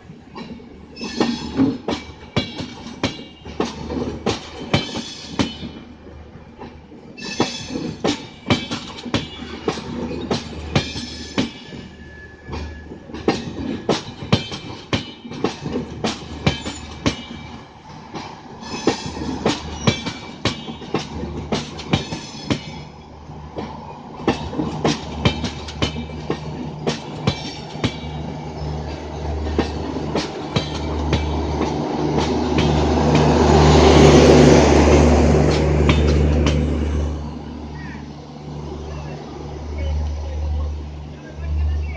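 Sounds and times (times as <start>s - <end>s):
train wheels clicking over rail joints: 0.2s - 37.9s
wheels squealing: 18.6s - 20.8s.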